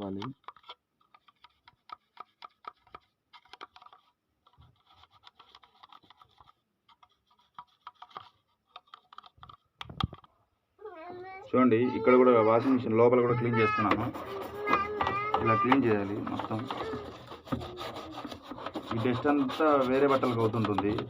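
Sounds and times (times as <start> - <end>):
brush scrubbing plastic drawer: 12.0 - 21.0.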